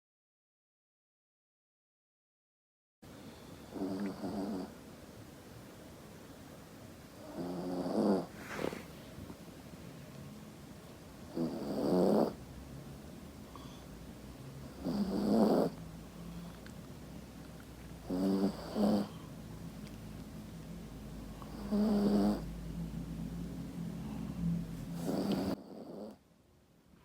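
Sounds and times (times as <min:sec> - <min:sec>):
dog snoring: 0:03.7 - 0:04.8, 0:07.2 - 0:08.9, 0:11.3 - 0:12.4, 0:14.6 - 0:15.8, 0:18.0 - 0:19.3, 0:21.4 - 0:22.5, 0:24.9 - 0:26.2.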